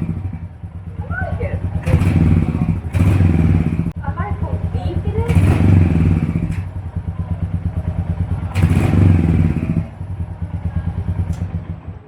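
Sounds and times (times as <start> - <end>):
engine revving: 0.0 - 12.0
motorcycle engine idling: 0.0 - 12.0.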